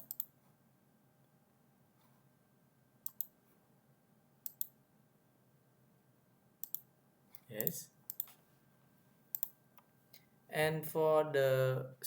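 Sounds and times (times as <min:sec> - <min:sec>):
computer mouse clicking: 0:00.0 - 0:00.4, 0:03.0 - 0:03.4, 0:04.4 - 0:04.8, 0:06.6 - 0:08.4, 0:09.3 - 0:10.3.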